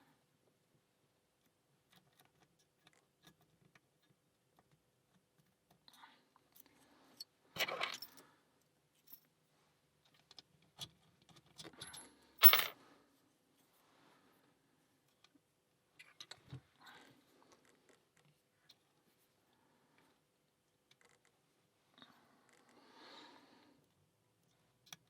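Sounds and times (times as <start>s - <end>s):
metallic jangle of lock and tools: 7.6s - 8.2s, 11.6s - 12.8s.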